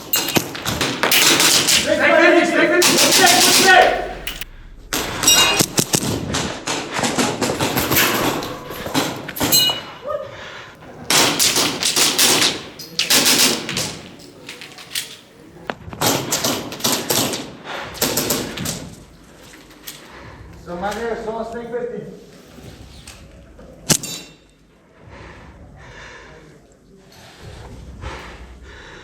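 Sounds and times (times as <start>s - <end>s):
airsoft guns firing: 0.0s - 9.8s, 11.0s - 14.8s, 16.0s - 18.9s.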